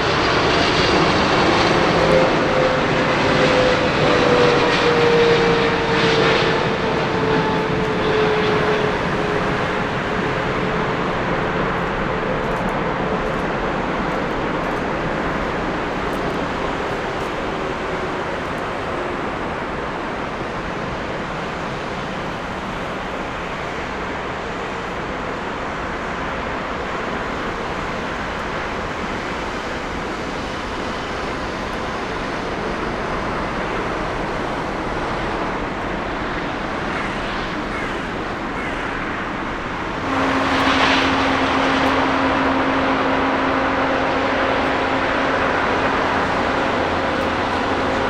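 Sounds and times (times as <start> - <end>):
jet engines rushing: 0.0 - 48.0
steady low hum: 28.8 - 48.0.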